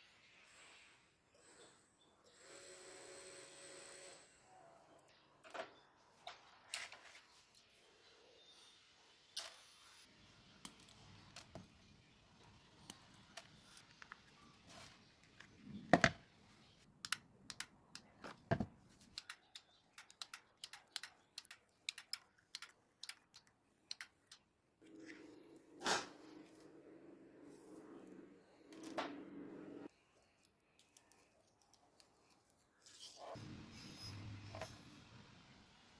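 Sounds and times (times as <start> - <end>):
small parts clicking and tapping: 17.0 - 24.5.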